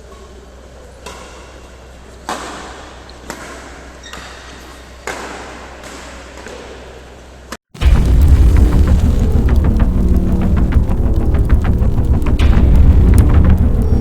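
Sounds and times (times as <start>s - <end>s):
rackets hitting shuttlecock: 2.3s - 6.8s
steady low hum: 7.8s - 14.0s.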